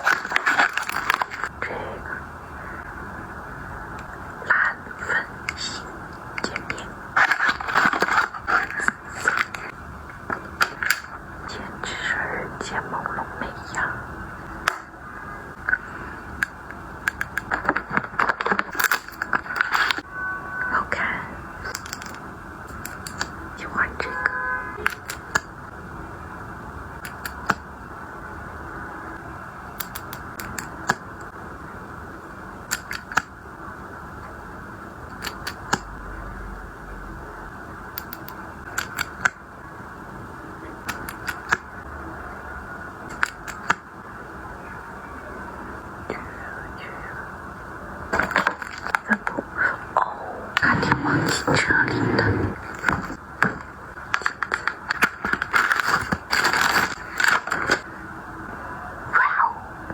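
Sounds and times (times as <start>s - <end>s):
packaging clicks and crinkles: 0.0s - 1.5s, 7.2s - 9.7s, 48.1s - 49.1s, 52.6s - 57.8s
steady low hiss: 0.0s - 59.9s.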